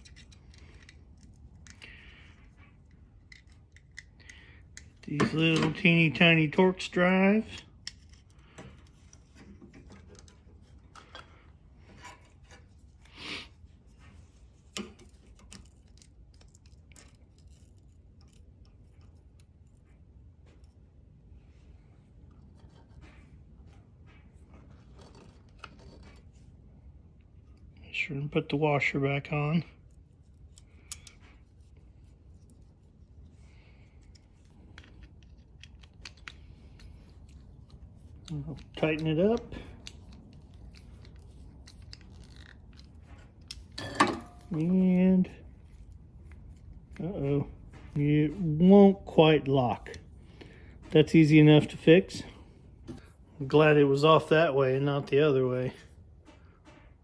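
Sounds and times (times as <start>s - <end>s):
small metal parts clicking: 0.0s - 5.2s, 30.5s - 31.3s.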